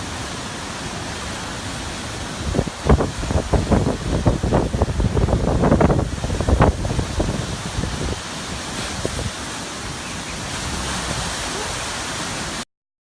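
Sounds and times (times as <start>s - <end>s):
wind buffeting microphone: 2.4s - 9.5s.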